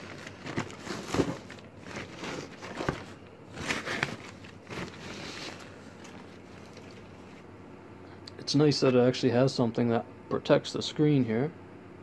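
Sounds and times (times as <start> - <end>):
plastic and foam rustling: 0.0 - 7.5.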